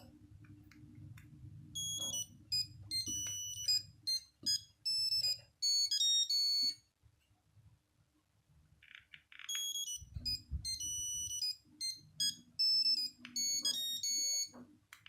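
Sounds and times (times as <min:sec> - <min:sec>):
monophonic phone ringtone: 0:01.8 - 0:06.8, 0:09.5 - 0:14.6.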